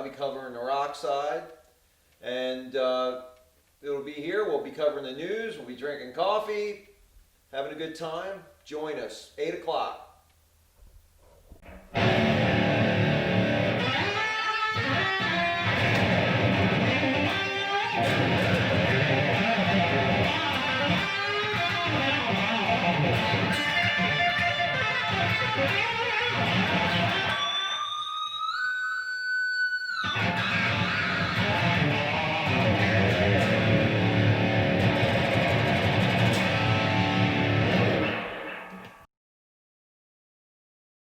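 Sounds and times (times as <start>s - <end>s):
bent guitar note: 11.6s - 27.4s, 30.0s - 39.0s
rock music: 11.9s - 28.5s, 30.0s - 39.0s.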